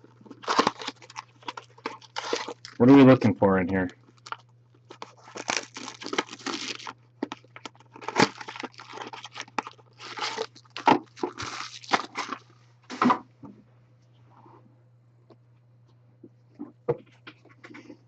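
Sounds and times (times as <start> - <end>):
card box wrapping crinkling: 0.0 - 3.1, 3.8 - 12.5
cardboard box being torn open: 0.3 - 2.8, 5.0 - 12.4.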